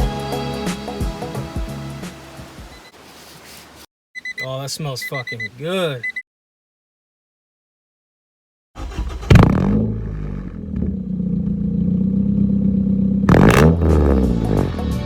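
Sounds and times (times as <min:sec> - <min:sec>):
car engine starting: 0:08.8 - 0:15.0
engine revving: 0:08.8 - 0:15.0.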